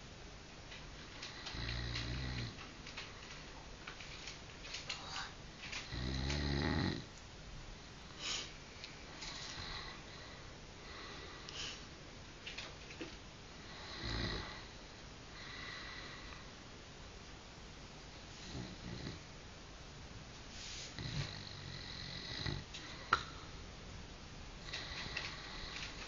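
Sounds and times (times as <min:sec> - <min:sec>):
man snoring: 0:01.3 - 0:02.6, 0:05.9 - 0:07.1, 0:13.7 - 0:14.7, 0:18.5 - 0:19.2, 0:21.0 - 0:22.7
faint breathing: 0:08.1 - 0:11.9, 0:13.5 - 0:16.6, 0:20.5 - 0:23.6, 0:24.6 - 0:26.0.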